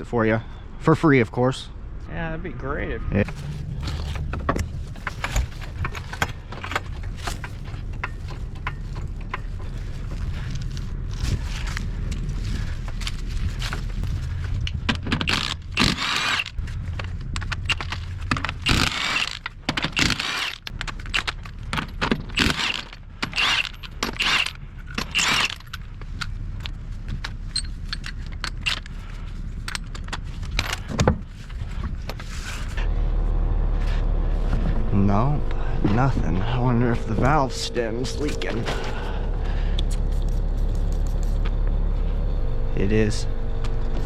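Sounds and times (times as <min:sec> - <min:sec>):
steady low rumble: 0:00.0 - 0:44.0
metallic clinking and rattling: 0:03.2 - 0:32.8.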